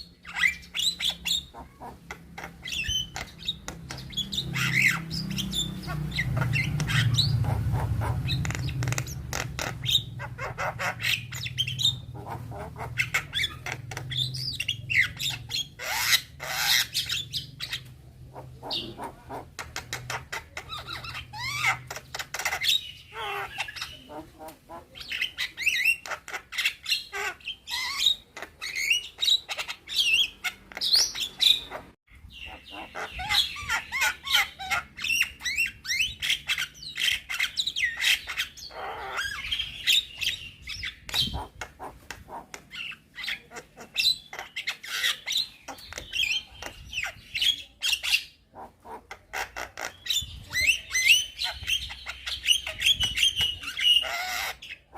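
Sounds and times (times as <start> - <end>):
bird chattering and whistling: 0.0 - 54.9.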